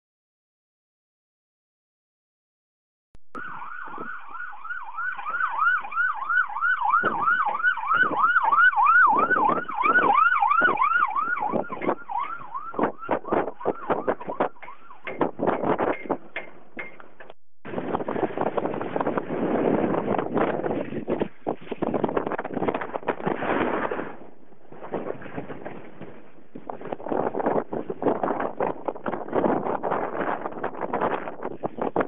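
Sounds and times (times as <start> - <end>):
siren yelping: 3.3 - 15.4
wind buffeting microphone: 3.4 - 32.0.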